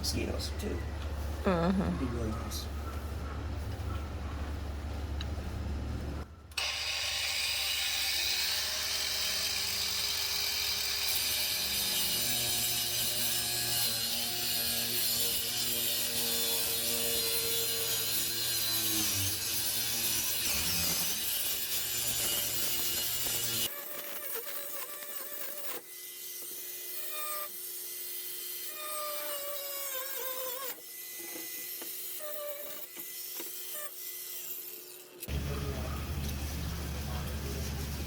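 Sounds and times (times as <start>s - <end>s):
electric saw cutting wood: 6.6s - 35.4s.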